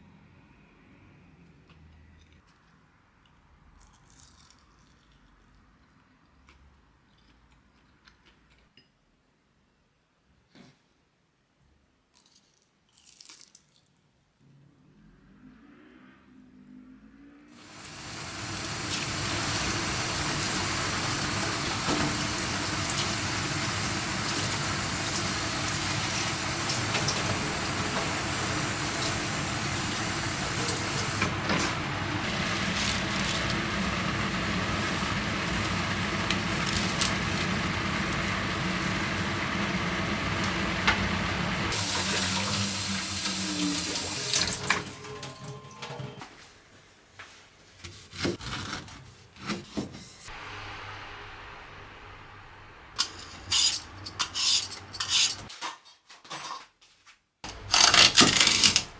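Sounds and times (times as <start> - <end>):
water running from tap into sink: 17.6 - 45.3, 51.0 - 55.5.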